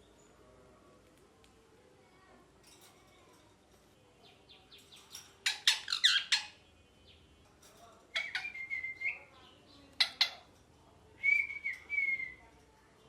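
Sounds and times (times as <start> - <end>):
parrot chirps and squawks: 5.4 - 6.6, 8.2 - 8.6, 10.0 - 10.5.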